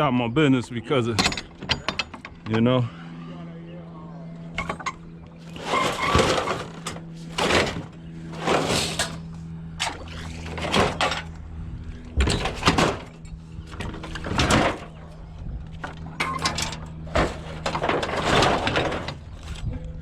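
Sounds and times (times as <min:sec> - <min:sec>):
machinery engine hum: 0:00.0 - 0:20.0
scrap metal clattering and crashing: 0:04.6 - 0:11.4, 0:12.2 - 0:19.7.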